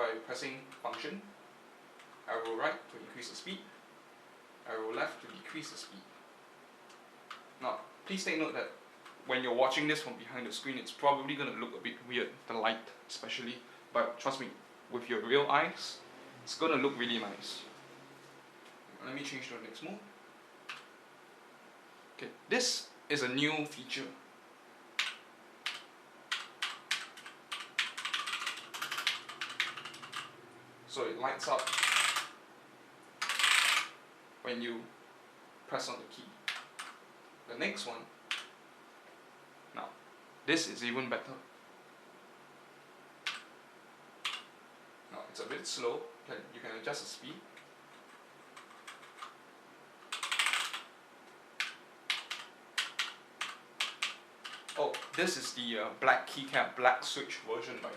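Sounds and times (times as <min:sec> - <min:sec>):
mechanical keyboard typing: 0:25.0 - 0:30.4, 0:31.5 - 0:32.4, 0:33.2 - 0:34.0, 0:36.4 - 0:37.0, 0:38.3 - 0:38.5, 0:43.2 - 0:43.5, 0:44.2 - 0:44.5, 0:48.0 - 0:49.4, 0:50.0 - 0:50.9, 0:51.6 - 0:55.6.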